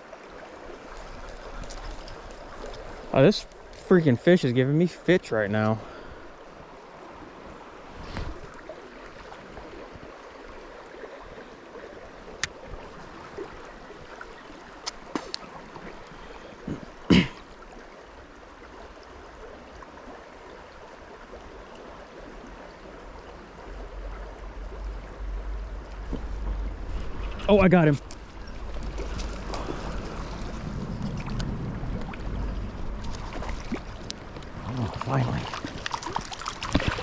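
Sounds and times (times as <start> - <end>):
stream water running: 0.0 - 37.0.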